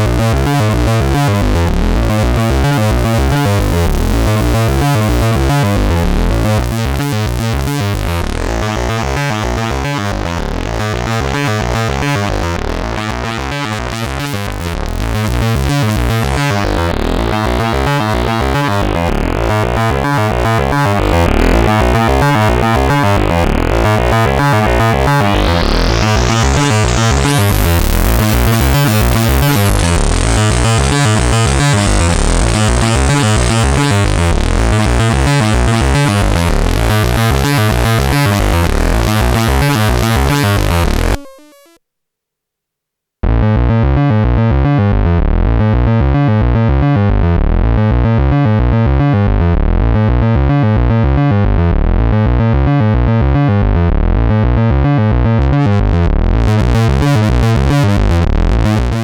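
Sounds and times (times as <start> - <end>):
synthesizer note sequence: 0.0 - 41.8, 55.6 - 59.0.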